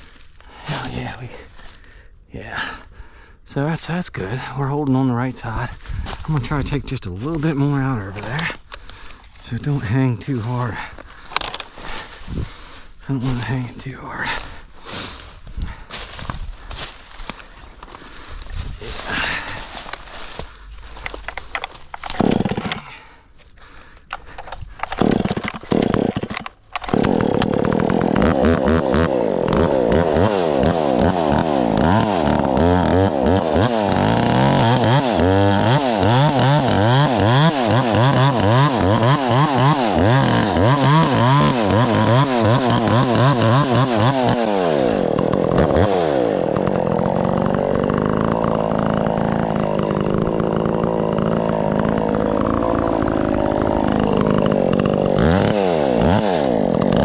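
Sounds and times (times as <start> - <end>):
chainsaw cutting wood: 6.6 - 13.7, 14.3 - 57.0.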